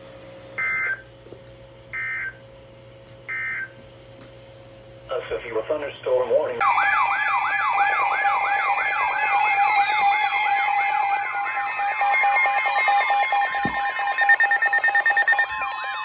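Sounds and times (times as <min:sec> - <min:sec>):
electronic siren warning alert: 0:06.6 - 0:16.0.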